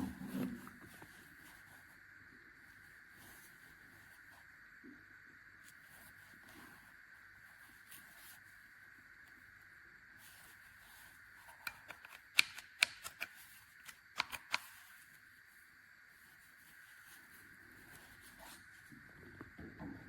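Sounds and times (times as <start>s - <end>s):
sharp clicks and taps: 11.6s - 14.7s.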